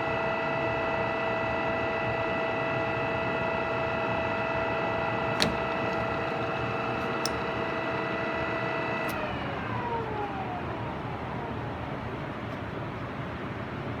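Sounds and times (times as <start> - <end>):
drill press gear whine: 0.2 - 12.4
machine click: 5.4 - 6.4, 7.0 - 7.6.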